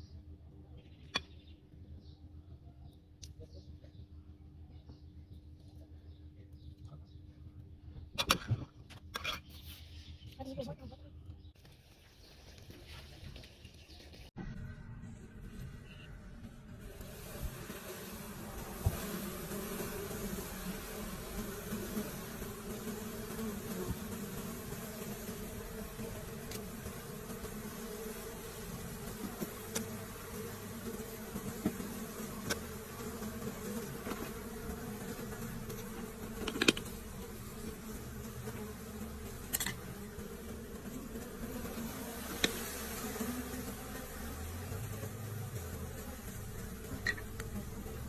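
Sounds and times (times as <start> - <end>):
bees buzzing: 15.6 - 48.0.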